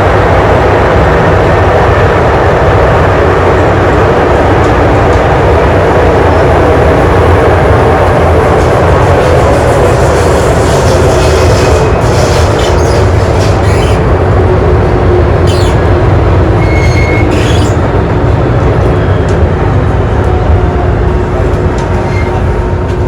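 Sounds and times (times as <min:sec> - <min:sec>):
train wheels rumbling on rail: 0:00.0 - 0:23.0
wheel squeals: 0:10.6 - 0:14.1, 0:15.4 - 0:15.9, 0:16.6 - 0:17.8, 0:22.0 - 0:22.6.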